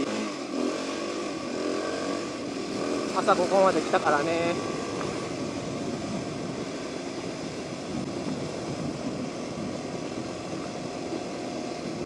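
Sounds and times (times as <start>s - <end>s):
motorcycle engine running: 0.0s - 12.0s
wind on microphone: 1.0s - 12.0s.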